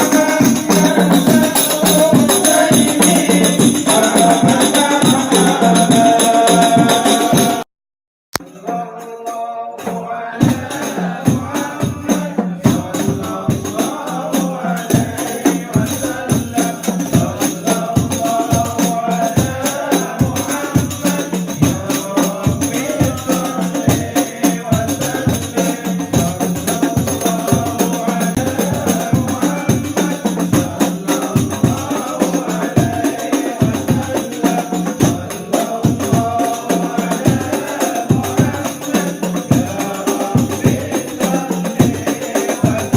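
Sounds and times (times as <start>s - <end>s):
frame drums with jingles: 0.0s - 7.6s, 8.4s - 42.9s
group singing in unison: 0.0s - 7.7s, 8.4s - 42.9s.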